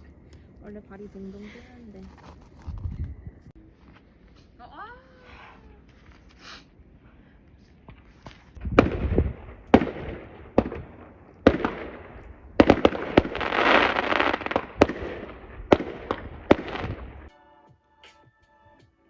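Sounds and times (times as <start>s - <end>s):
fireworks bangs and crackling: 7.8s - 17.3s.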